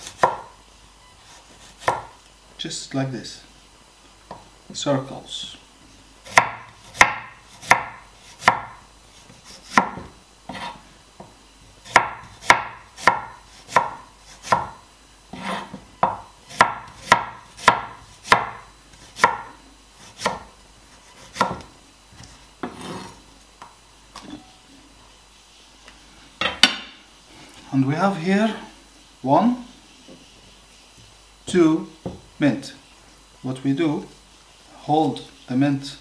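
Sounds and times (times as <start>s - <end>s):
knife slicing on wooden board: 15.3s - 15.8s.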